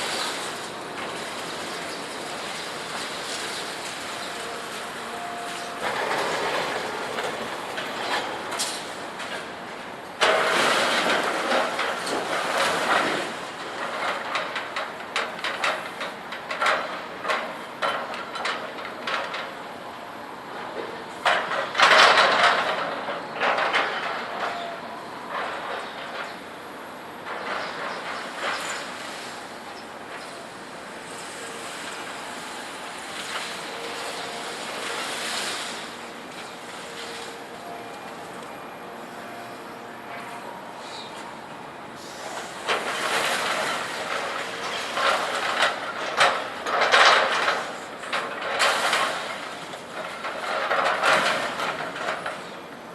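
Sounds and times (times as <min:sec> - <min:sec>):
distant hissy machinery rumble: 0:00.0 - 0:52.9
faint machine whine: 0:00.0 - 0:52.9
scrap metal banging and clanking: 0:10.2 - 0:19.5, 0:20.8 - 0:26.3, 0:42.0 - 0:52.4.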